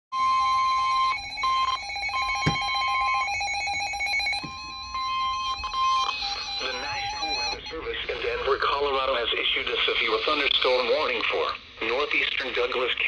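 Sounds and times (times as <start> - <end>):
two-tone alarm: 0.1 - 7.9.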